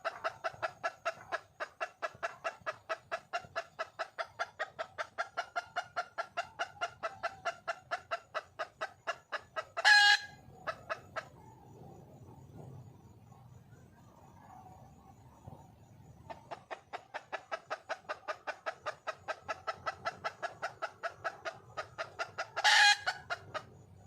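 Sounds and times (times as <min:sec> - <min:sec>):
hen clucking: 0:00.0 - 0:12.4, 0:15.4 - 0:23.8.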